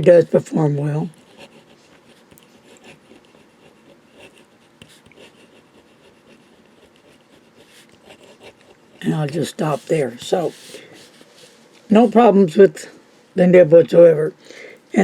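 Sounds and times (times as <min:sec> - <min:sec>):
fountain pen scratching on paper: 0:01.0 - 0:12.3.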